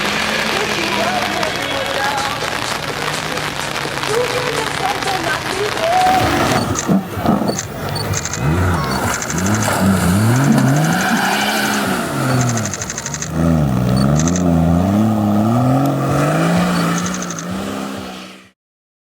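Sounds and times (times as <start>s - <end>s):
rapid high ticking: 6.0s - 17.9s
car engine revving: 6.1s - 18.6s.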